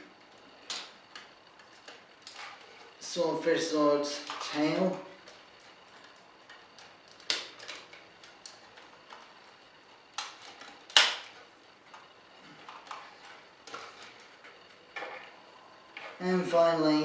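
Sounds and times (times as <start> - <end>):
plastic snap: 10.2 - 11.3.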